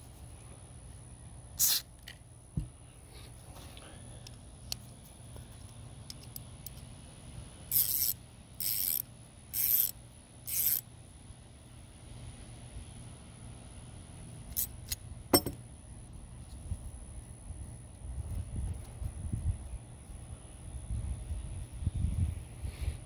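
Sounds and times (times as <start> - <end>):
ratchet wrench clicking: 1.6 - 1.8, 7.7 - 10.8
small knock: 15.3 - 15.6.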